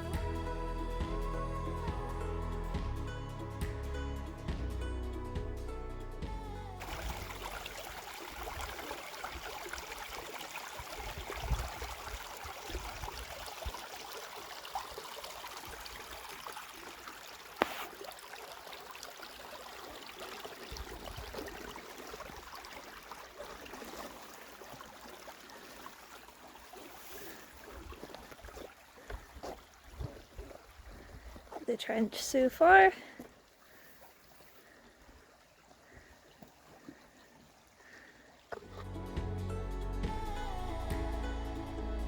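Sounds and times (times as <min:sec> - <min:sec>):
water trickling: 0:06.8 - 0:39.1.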